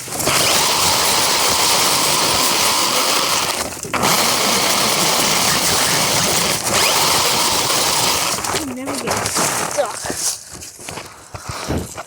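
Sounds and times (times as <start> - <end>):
toy car motor and wheels rushing: 0.0 - 12.0.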